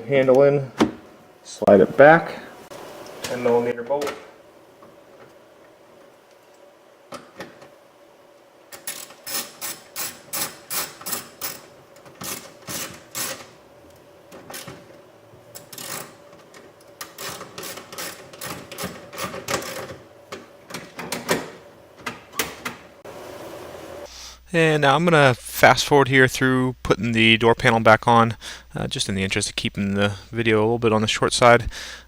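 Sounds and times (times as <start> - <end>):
ratchet clicking: 8.7 - 13.5, 15.6 - 16.2, 17.0 - 19.9.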